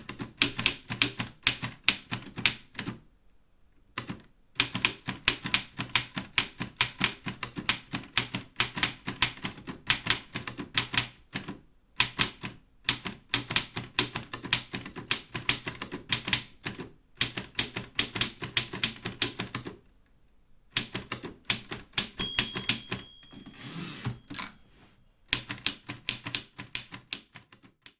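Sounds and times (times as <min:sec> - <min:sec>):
typewriter key strikes: 0:21.1 - 0:24.5
typewriter carriage return: 0:21.5 - 0:24.7
typewriter margin bell ringing: 0:22.2 - 0:24.6.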